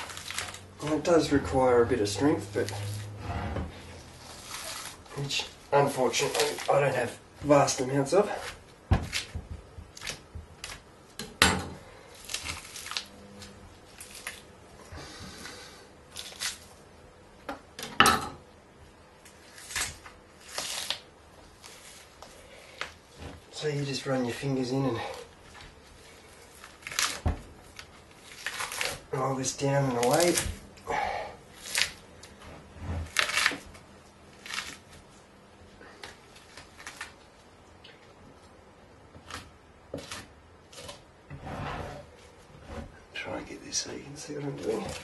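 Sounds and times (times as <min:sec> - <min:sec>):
wet squishing and tearing of meat: 0:00.0 - 0:03.2, 0:04.0 - 0:10.9, 0:12.0 - 0:14.5, 0:16.1 - 0:16.8, 0:19.2 - 0:23.2, 0:25.1 - 0:30.7, 0:31.5 - 0:32.4, 0:33.0 - 0:35.2, 0:36.0 - 0:37.6.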